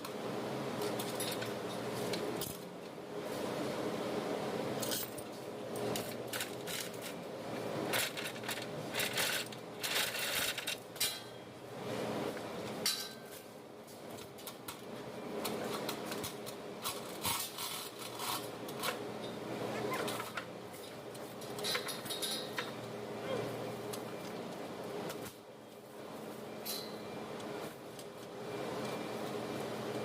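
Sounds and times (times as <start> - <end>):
metal tools clinking: 19.9 - 22.8, 26.6 - 27.0.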